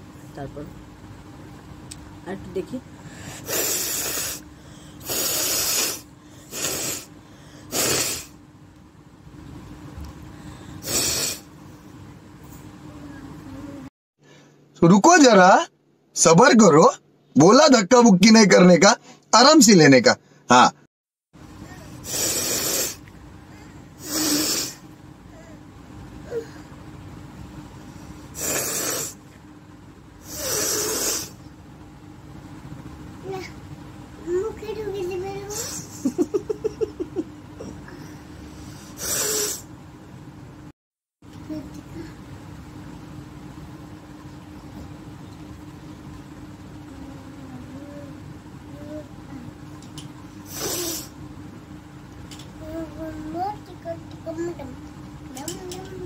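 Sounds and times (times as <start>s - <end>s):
woman blowing air through nose: 3.4s - 4.4s, 5.0s - 7.1s, 7.7s - 8.3s, 10.8s - 11.5s, 22.0s - 23.0s, 24.0s - 24.8s, 28.4s - 29.2s, 30.2s - 31.4s, 38.7s - 39.7s, 50.5s - 51.1s.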